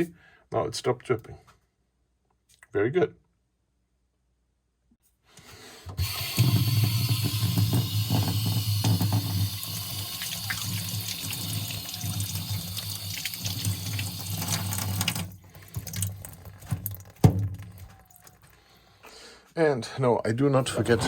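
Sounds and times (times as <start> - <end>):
water running from faucet: 6.0 - 17.2.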